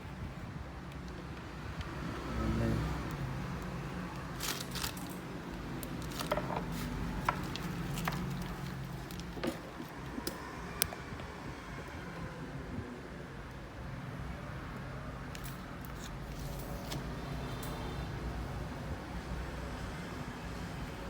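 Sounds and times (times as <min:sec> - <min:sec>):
light crinkling: 0:03.6 - 0:10.3.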